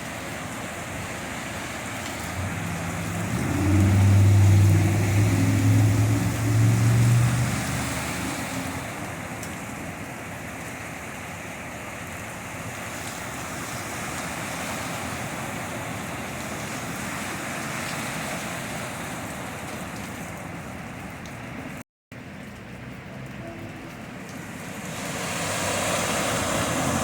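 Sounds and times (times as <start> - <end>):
heavy rain and floodwater rushing: 0.0 - 27.0
passing car engine hum: 1.9 - 9.3, 24.8 - 27.0.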